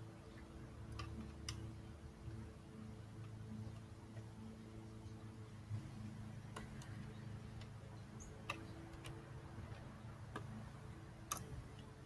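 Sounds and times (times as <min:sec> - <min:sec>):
faint low hum: 0:00.0 - 0:12.0
light sharp clicks: 0:11.2 - 0:11.9.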